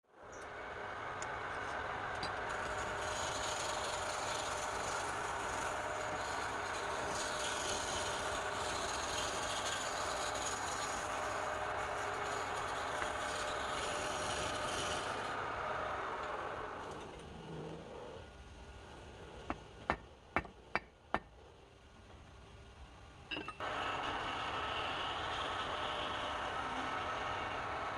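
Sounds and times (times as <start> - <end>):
turning tool scraping wood: 1.6 - 15.4
wood lathe running: 2.2 - 16.0.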